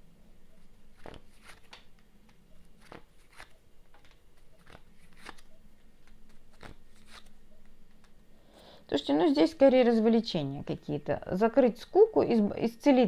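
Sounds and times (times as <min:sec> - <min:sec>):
playing cards snapping and clicking: 0:01.0 - 0:07.3.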